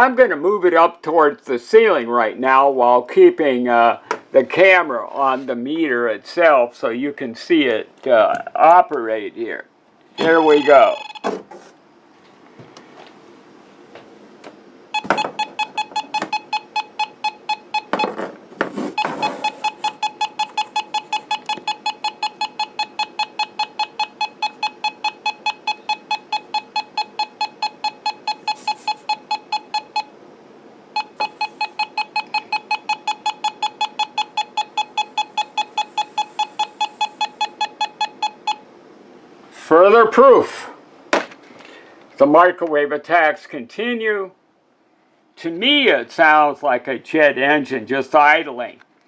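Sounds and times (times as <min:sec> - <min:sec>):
meter beeping rapidly: 0:10.2 - 0:11.3, 0:14.9 - 0:18.2, 0:19.0 - 0:30.1, 0:31.0 - 0:38.6.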